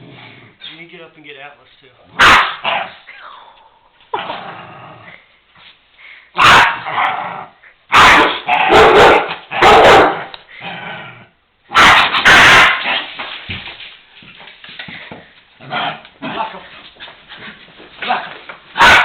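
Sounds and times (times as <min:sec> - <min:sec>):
dog barking excitedly: 0:02.2 - 0:03.0, 0:06.4 - 0:07.2, 0:07.9 - 0:10.3, 0:11.7 - 0:13.2, 0:18.1 - 0:19.0.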